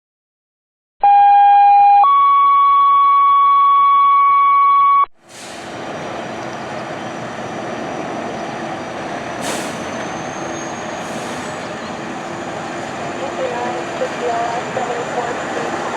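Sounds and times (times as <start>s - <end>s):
street traffic noise: 5.2s - 15.9s.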